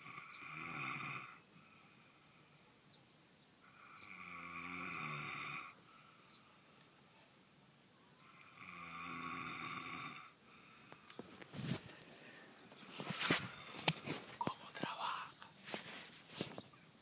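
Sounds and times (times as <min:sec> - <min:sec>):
person snoring: 0:03.8 - 0:05.8.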